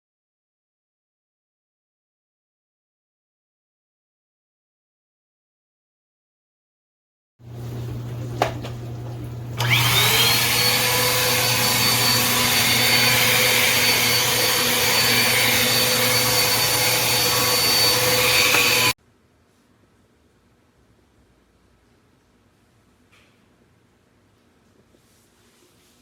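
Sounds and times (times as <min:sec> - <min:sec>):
vacuum cleaner running: 0:07.4 - 0:19.0.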